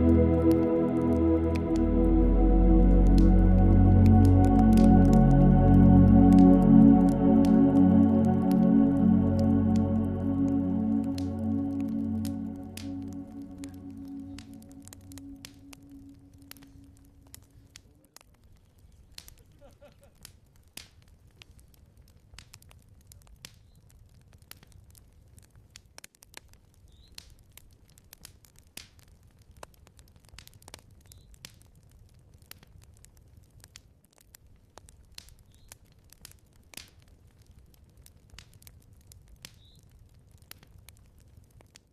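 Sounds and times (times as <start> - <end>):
low steady rumble: 0.0 - 17.6
wood fire crackling and popping: 0.0 - 41.9.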